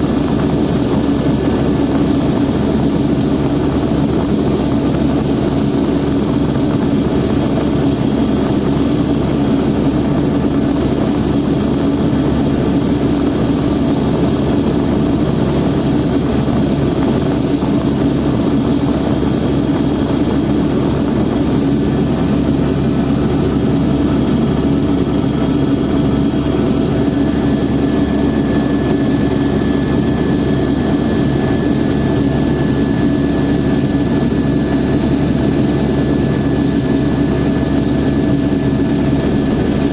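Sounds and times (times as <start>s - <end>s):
helicopter engine and rotor noise: 0.0s - 39.9s.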